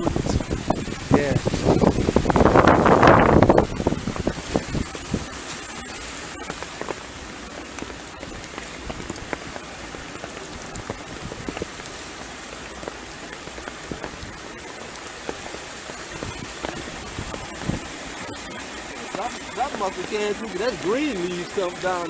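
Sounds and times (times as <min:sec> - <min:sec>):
heavy rain hissing: 0:00.0 - 0:22.0.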